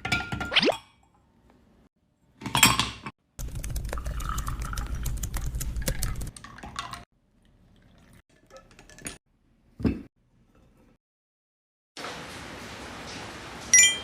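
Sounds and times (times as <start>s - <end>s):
dishes and cutlery clattering: 2.4s - 3.1s.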